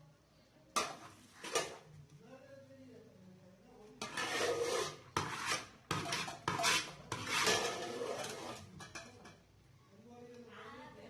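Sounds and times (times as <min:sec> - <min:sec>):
metal spoon scraping cooking pot: 0:00.8 - 0:01.9, 0:04.0 - 0:09.4.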